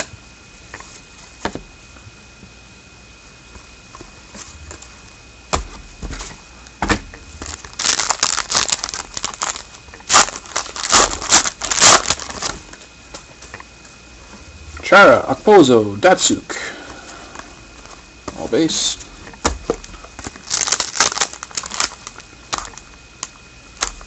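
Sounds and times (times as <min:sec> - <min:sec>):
knocks of pack handling: 0:05.5 - 0:12.8, 0:19.2 - 0:22.8
foil wrapper tearing and crinkling: 0:07.3 - 0:12.7, 0:19.7 - 0:24.0.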